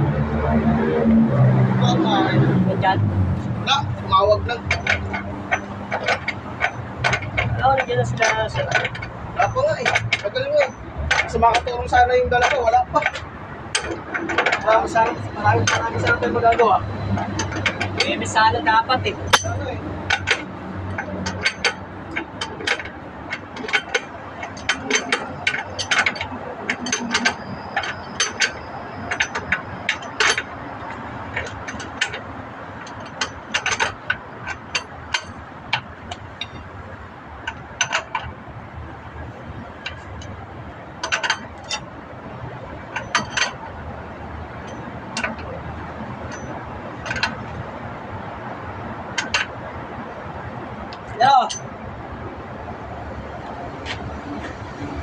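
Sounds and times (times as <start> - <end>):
hand tools clinking on metal: 4.4 - 18.6, 19.2 - 36.8, 41.0 - 41.9, 42.8 - 43.7, 44.6 - 47.5, 49.2 - 49.6, 50.9 - 51.7.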